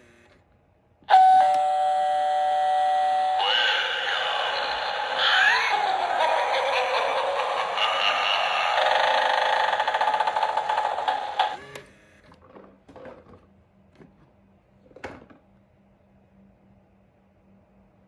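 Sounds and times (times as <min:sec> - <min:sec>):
buzzy distorted spooky sound effect: 0:03.3 - 0:11.6.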